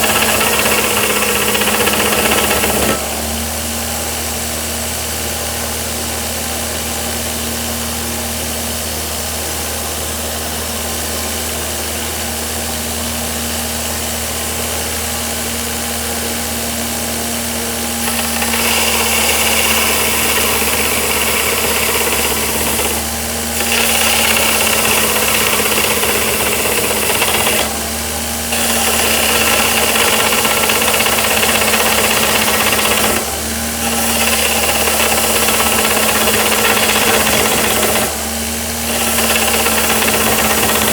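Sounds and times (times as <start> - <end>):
steel grinding on belt: 0.0 - 3.1, 18.0 - 27.9, 28.5 - 40.9
belt grinder motor running: 0.0 - 4.2, 17.5 - 40.9.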